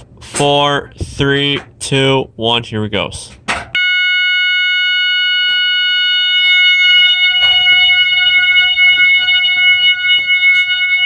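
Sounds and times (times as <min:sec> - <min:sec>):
loud electronic horn tone: 0:03.8 - 0:11.0.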